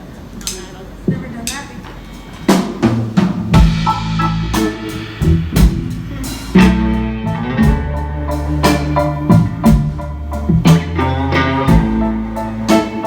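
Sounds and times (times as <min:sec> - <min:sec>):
drum kit beat: 0:02.2 - 0:13.0
held bass notes: 0:03.5 - 0:13.0
guitar chords: 0:03.6 - 0:13.0.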